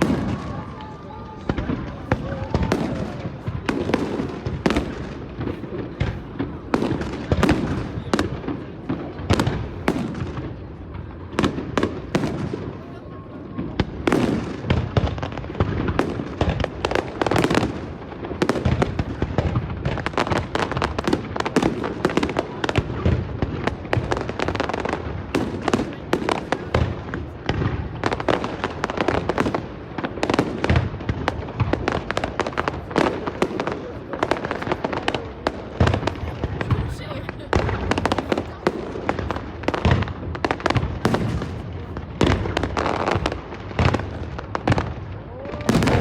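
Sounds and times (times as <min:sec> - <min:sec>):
fireworks bursting and crackling: 0:00.0 - 0:46.0.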